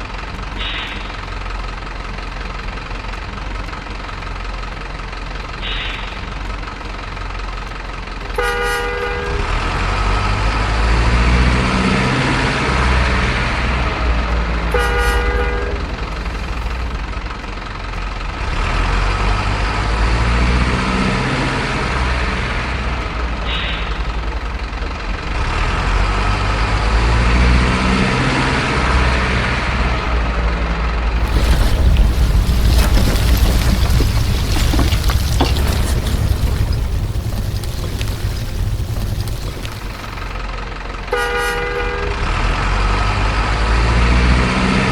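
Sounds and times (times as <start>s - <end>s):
diesel truck engine pulling hard: 3.3s - 44.9s
truck horn blasts: 8.4s - 9.5s, 14.7s - 15.8s, 41.1s - 42.4s.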